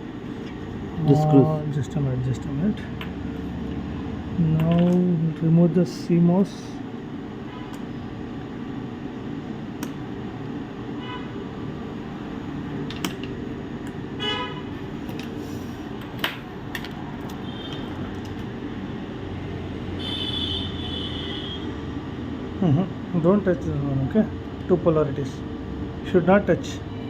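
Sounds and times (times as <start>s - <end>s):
low background hum: 0.0s - 27.0s.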